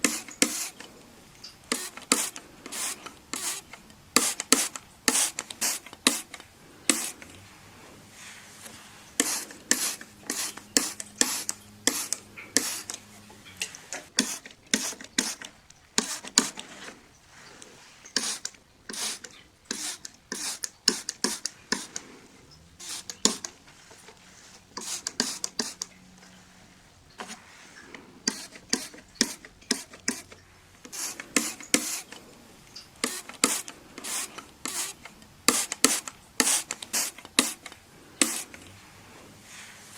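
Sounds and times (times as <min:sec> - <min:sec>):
trigger spray bottle spraying: 0:00.0 - 0:00.9, 0:01.6 - 0:07.3, 0:09.1 - 0:13.1, 0:13.9 - 0:17.0, 0:17.6 - 0:22.2, 0:22.8 - 0:25.9, 0:27.2 - 0:27.4, 0:28.2 - 0:32.2, 0:32.9 - 0:38.7
wiping on glass: 0:00.0 - 0:39.9.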